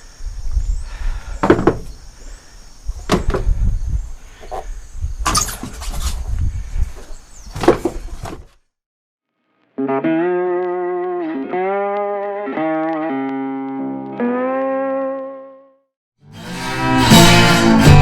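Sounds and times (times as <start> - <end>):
guitar with bending notes: 9.7 - 18.0.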